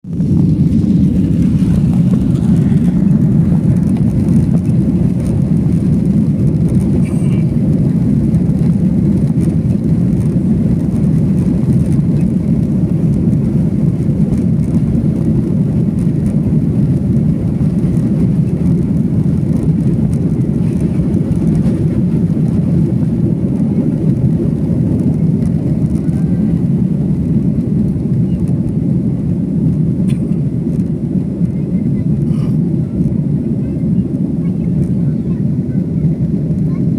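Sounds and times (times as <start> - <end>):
airliner engines rumbling: 0.0 - 36.9.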